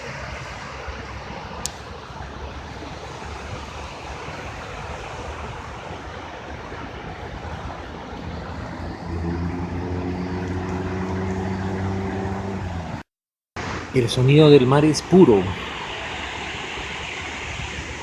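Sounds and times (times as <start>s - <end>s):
sea surf washing on shore: 0.0s - 13.0s, 13.6s - 18.0s
engine hum: 0.0s - 13.9s.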